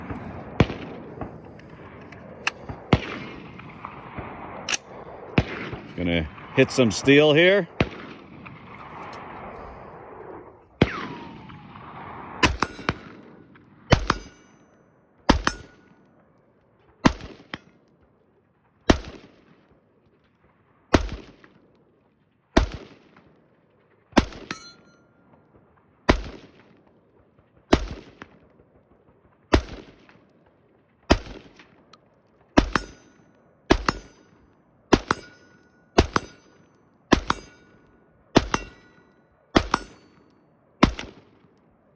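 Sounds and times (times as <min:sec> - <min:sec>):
rifle shots: 0:00.0 - 0:14.6, 0:15.3 - 0:15.8, 0:17.0 - 0:17.6, 0:18.9 - 0:19.6, 0:20.9 - 0:21.6, 0:22.6 - 0:23.4, 0:24.2 - 0:24.8, 0:26.1 - 0:26.8, 0:27.7 - 0:30.3, 0:31.1 - 0:41.6
steel plate ringing clang: 0:12.5 - 0:13.2, 0:15.4 - 0:15.9, 0:24.5 - 0:25.0, 0:32.7 - 0:33.2, 0:33.8 - 0:34.4, 0:35.0 - 0:40.3.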